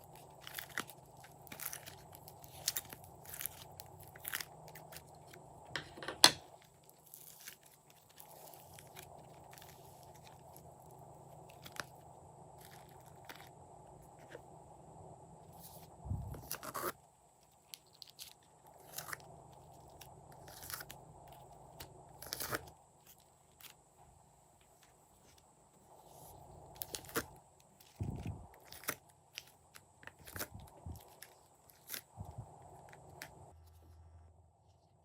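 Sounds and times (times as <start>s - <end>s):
slime popping and crackling: 0.0s - 5.4s.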